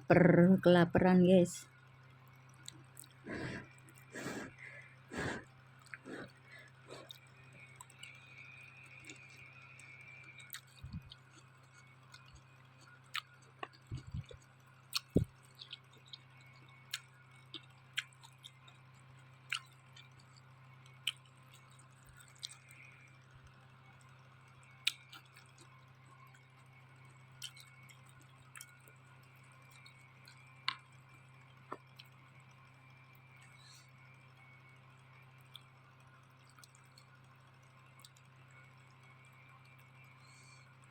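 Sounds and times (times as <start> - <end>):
steady low hum: 0.0 - 40.9
chewing noodles: 2.6 - 23.0, 24.8 - 26.5, 27.3 - 30.8.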